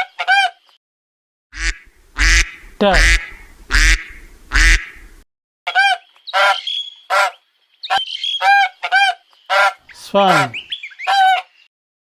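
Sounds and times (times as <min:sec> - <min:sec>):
duck quacking: 0:01.6 - 0:05.0, 0:05.7 - 0:11.5
waterfowl honking: 0:01.6 - 0:05.0, 0:05.7 - 0:11.6.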